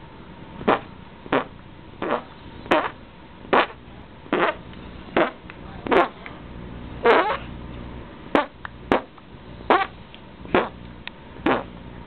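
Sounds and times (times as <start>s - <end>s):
fart-like collarbone noises: 0.6s - 4.6s, 5.2s - 6.2s, 7.0s - 7.5s, 8.4s - 9.1s, 9.7s - 9.9s, 10.5s - 10.8s, 11.4s - 11.7s.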